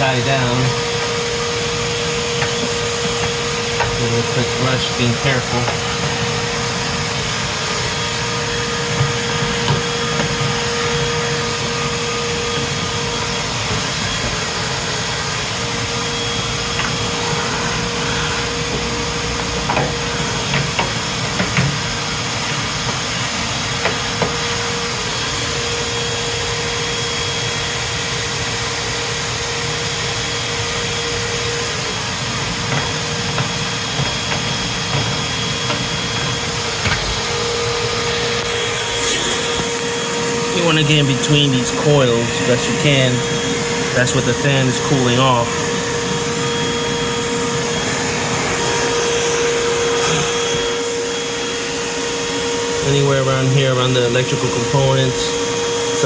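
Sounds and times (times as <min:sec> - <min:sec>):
vacuum cleaner running: 0:00.0 - 0:56.0
nozzle knocking and scraping: 0:00.1 - 0:23.2, 0:32.4 - 0:46.8.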